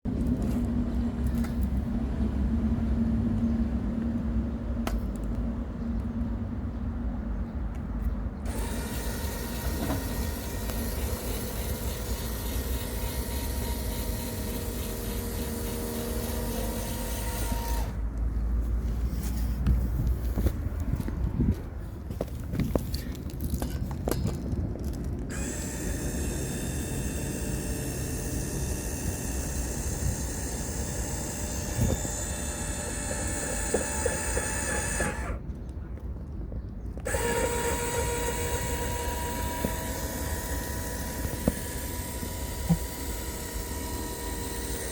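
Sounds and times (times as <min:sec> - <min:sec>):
electric motor humming: 0:08.5 - 0:18.0, 0:25.3 - 0:35.4, 0:37.0 - 0:44.9.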